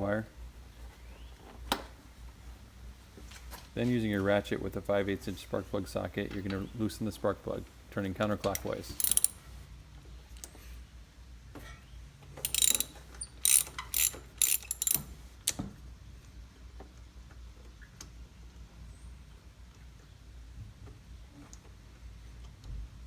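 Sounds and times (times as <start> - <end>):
ratchet clicking: 8.4 - 9.5, 12.4 - 15.6.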